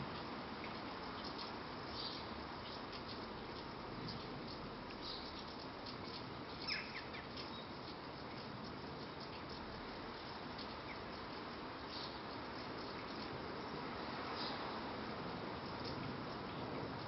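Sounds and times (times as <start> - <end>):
rain hiss: 0.0 - 17.0
bird chirp: 6.6 - 7.7.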